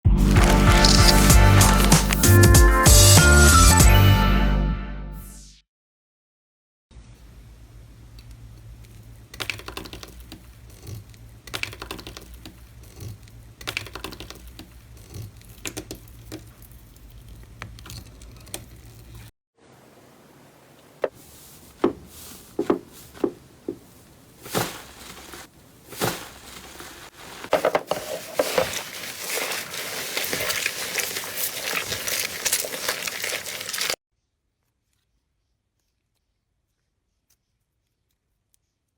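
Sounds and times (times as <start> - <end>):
slime crackling and popping: 0.2 - 2.5, 28.1 - 34.0.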